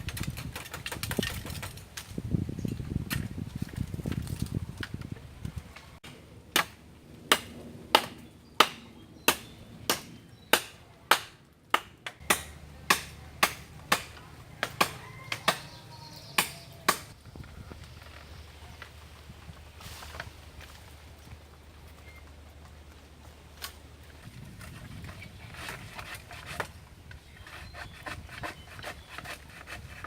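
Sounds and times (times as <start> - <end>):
blade chopping wood: 6.6 - 15.8.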